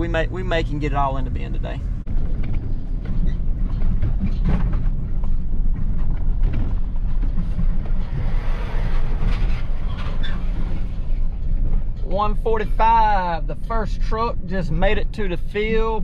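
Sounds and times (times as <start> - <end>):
heavy engine rumbling: 0.0 - 16.0
rattles and clatter: 0.4 - 12.9.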